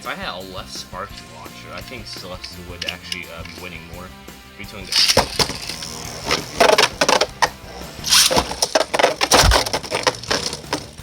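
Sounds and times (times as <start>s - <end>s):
spinning tops clashing: 4.9s - 11.0s.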